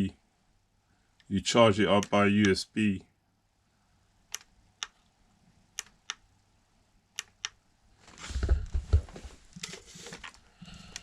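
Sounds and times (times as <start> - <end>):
rustling handling noise: 8.0 - 10.9.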